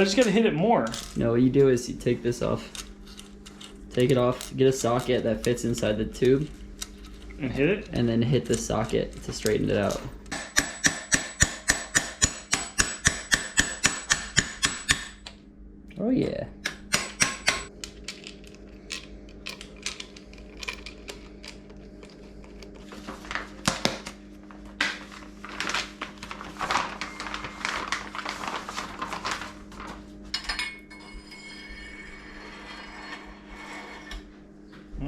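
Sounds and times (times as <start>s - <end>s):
metal tools clinking: 0.0s - 1.2s.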